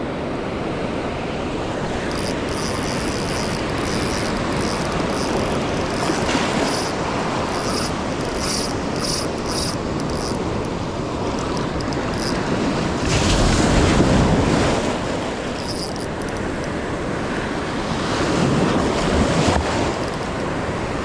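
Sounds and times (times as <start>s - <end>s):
surf washing on beach: 0.0s - 21.0s
wind on microphone: 1.8s - 21.0s
high-pitched squeaks or chirps: 2.0s - 12.5s, 15.6s - 16.4s.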